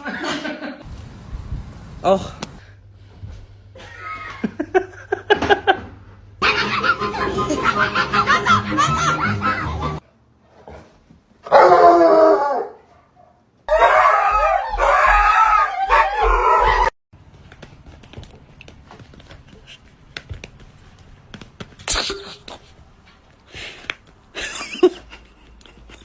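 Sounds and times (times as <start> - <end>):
dog howling: 11.5 - 12.9, 13.7 - 17.0.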